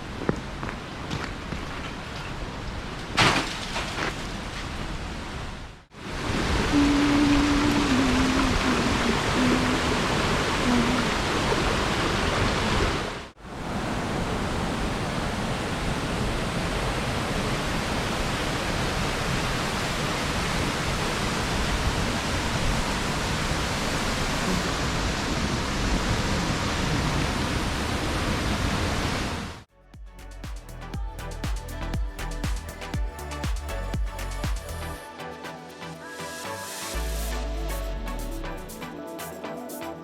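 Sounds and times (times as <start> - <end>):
waterfall rushing: 5.9 - 29.7
music: 29.7 - 40.0.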